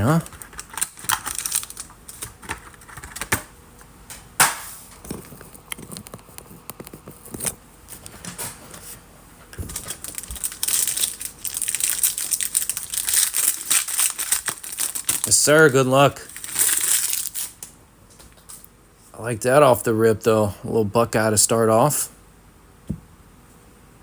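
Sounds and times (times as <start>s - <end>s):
wrapper crinkling: 0.0s - 3.4s, 9.6s - 17.7s.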